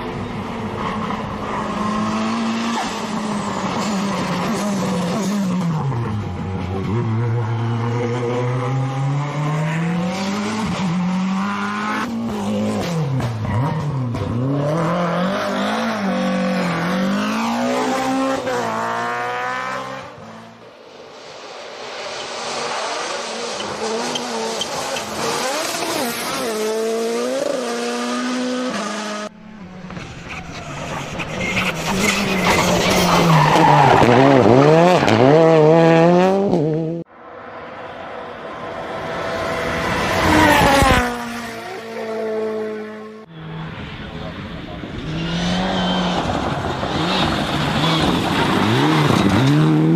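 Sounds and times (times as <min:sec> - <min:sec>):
rally car engines revving: 0:00.0 - 0:49.9
loose surface noise: 0:29.6 - 0:34.6
tyre skids: 0:29.6 - 0:35.4.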